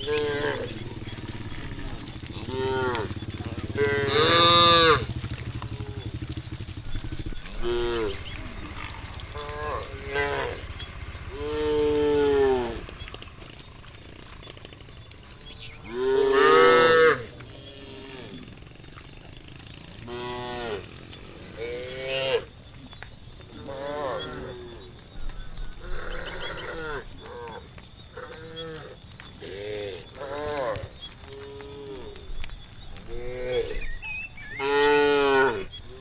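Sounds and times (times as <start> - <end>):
cattle mooing: 0.0 - 13.0, 15.9 - 18.4, 23.6 - 24.8, 34.5 - 35.7.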